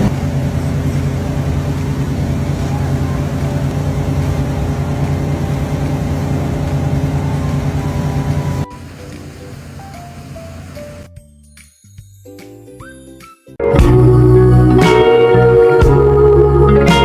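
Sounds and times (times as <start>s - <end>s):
motorboat engine droning: 0.0s - 11.1s
water noise: 0.0s - 11.1s
wind: 0.0s - 11.1s.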